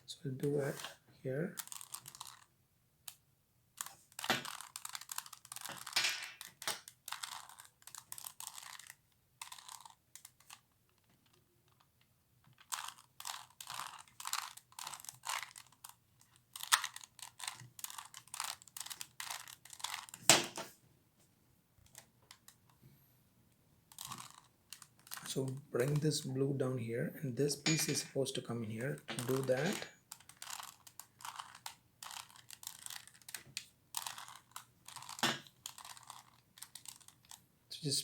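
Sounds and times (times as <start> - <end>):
puzzle cube twisting clicks: 1.6 - 3.2, 3.8 - 11.1, 12.5 - 20.3, 23.9 - 26.0, 28.8 - 37.4.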